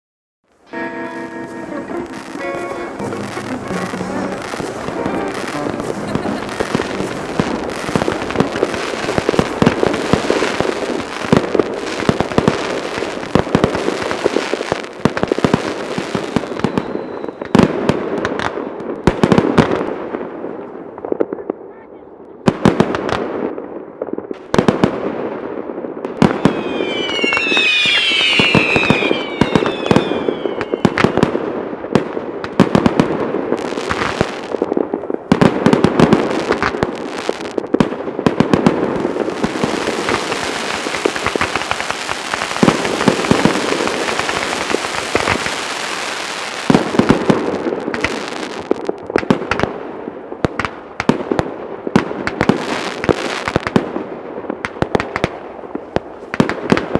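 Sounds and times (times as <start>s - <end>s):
firework crackling: 0.6s - 19.7s, 26.1s - 56.9s
whistling fireworks: 0.6s - 19.8s, 26.0s - 56.9s
firework shells bursting: 0.7s - 11.6s, 26.1s - 31.4s, 38.3s - 45.7s.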